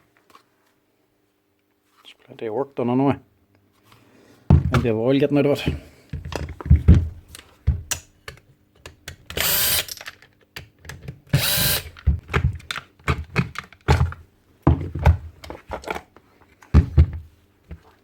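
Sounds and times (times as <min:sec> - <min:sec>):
metal and plastic parts clicking: 0:07.4 - 0:14.1
power drill running: 0:09.4 - 0:10.0, 0:11.4 - 0:12.0.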